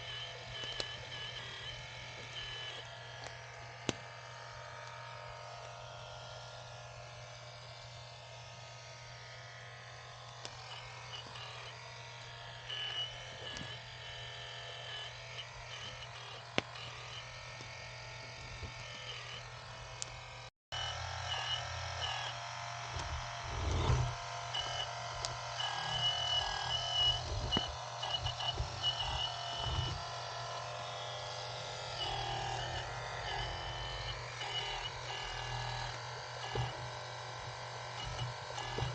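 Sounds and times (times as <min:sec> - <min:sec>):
electric hydraulic pump humming: 0:00.0 - 0:38.9
high whine: 0:20.8 - 0:38.9.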